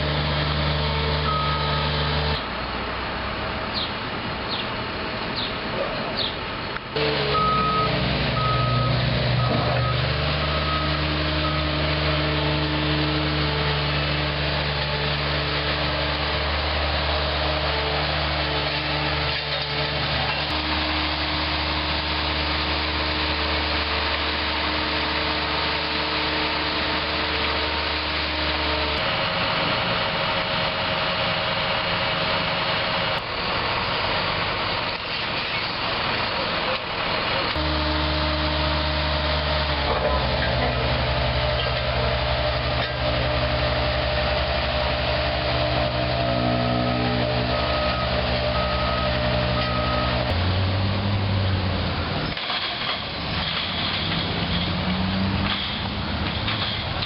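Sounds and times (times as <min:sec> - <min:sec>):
heavy equipment engine running: 0:00.0 - 0:57.0
reversing alarm beeping: 0:01.2 - 0:01.9, 0:07.2 - 0:11.8, 0:37.6 - 0:39.5, 0:46.3 - 0:50.3.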